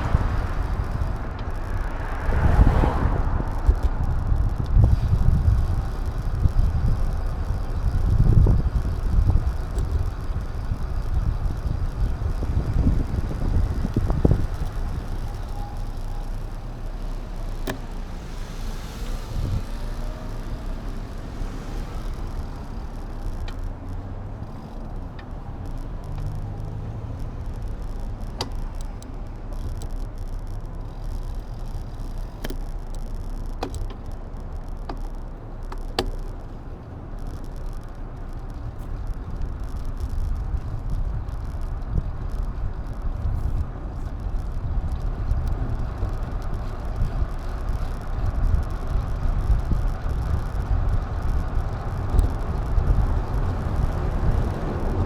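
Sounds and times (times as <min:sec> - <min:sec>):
road noise: 0:00.0 - 0:55.0
wind noise: 0:00.0 - 0:55.0
sharp click or rattle: 0:03.6 - 0:36.6.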